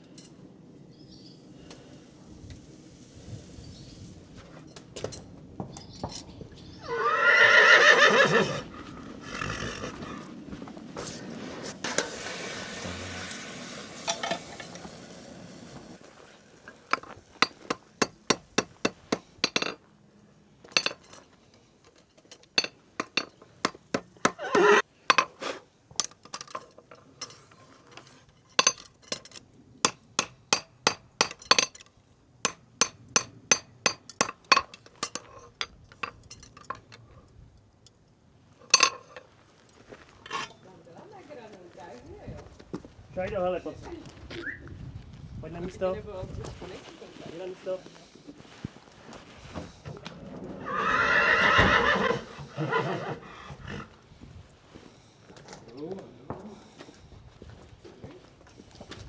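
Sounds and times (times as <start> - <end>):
hammer tapping on metal: 17.4 - 19.8, 29.9 - 31.8, 32.5 - 35.2.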